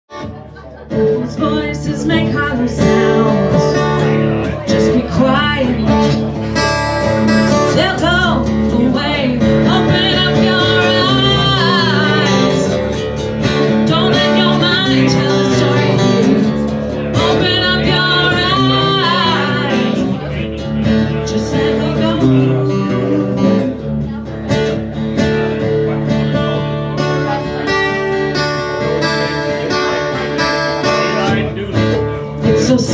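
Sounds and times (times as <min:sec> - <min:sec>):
person singing: 0:01.0 - 0:24.2
rock song on guitars: 0:01.1 - 0:32.9.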